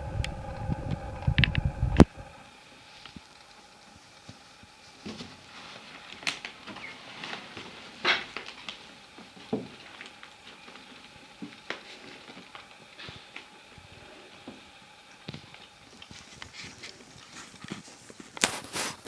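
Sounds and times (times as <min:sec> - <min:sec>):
puppies scrabbling on bedding: 0:15.3 - 0:19.0.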